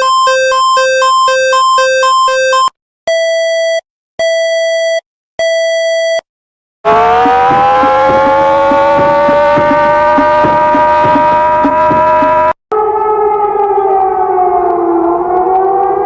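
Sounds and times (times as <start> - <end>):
siren wailing: 0.0 - 2.7, 6.9 - 16.0
alternating high and low beeps: 0.0 - 6.2
long electronic beeps: 0.0 - 6.2, 6.9 - 12.6.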